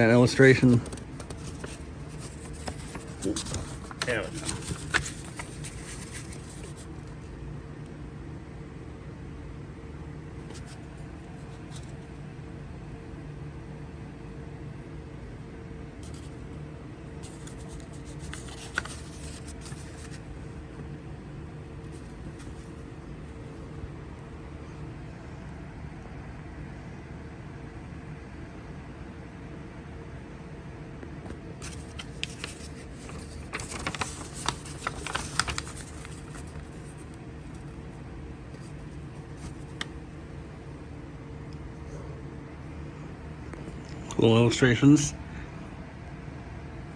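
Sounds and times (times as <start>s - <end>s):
paper rustling and crinkling: 0.0s - 7.3s, 10.4s - 12.2s, 16.0s - 16.5s, 17.2s - 20.8s, 21.8s - 22.9s, 31.6s - 37.8s, 38.5s - 40.0s
low background hum: 0.0s - 46.9s.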